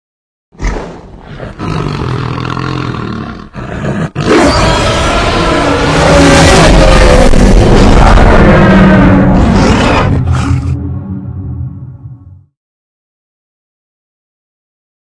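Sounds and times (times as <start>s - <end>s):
monster roar: 0.6s - 10.8s.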